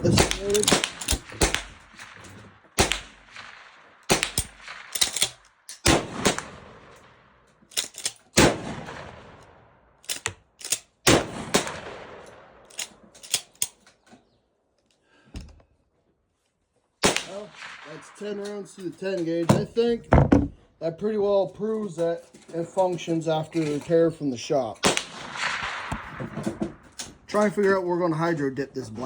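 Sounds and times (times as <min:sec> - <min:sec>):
shotgun shots: 0:00.0 - 0:07.2, 0:08.3 - 0:10.3, 0:11.0 - 0:13.0, 0:17.0 - 0:20.0, 0:24.8 - 0:27.2
sharp gun clicks: 0:00.1 - 0:07.1, 0:07.7 - 0:08.6, 0:09.4 - 0:14.0, 0:17.0 - 0:18.1, 0:24.8 - 0:26.2.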